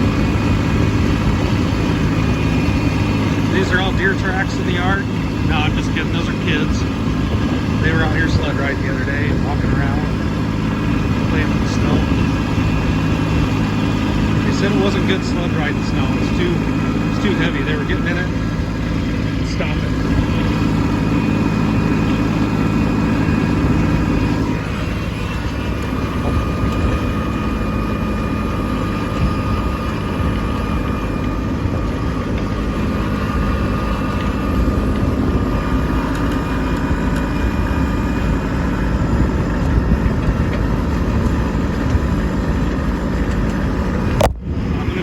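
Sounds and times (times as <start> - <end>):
tractor diesel engine running: 0.0 - 45.0.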